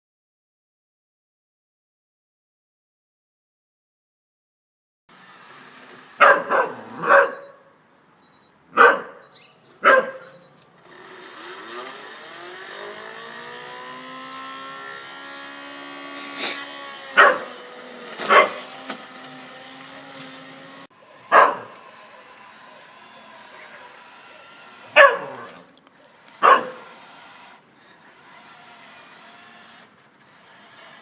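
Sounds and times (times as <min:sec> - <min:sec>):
robotic lawn mower humming: 0:05.1 - 0:07.2, 0:10.4 - 0:31.0
dog barking: 0:06.2 - 0:07.7, 0:08.7 - 0:10.4, 0:17.2 - 0:17.6, 0:18.2 - 0:18.6, 0:21.2 - 0:22.4, 0:24.9 - 0:25.6, 0:26.4 - 0:26.9.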